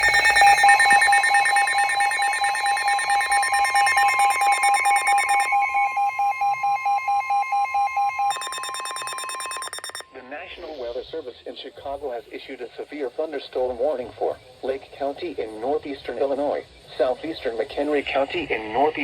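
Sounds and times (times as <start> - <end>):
pulsing alarm beeps: 0.0 - 10.0
steady warning alarm tone: 0.0 - 10.0.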